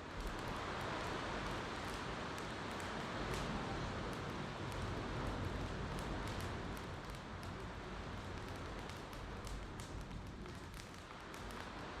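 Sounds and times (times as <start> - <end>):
campfire crackling and popping: 0.1 - 12.0.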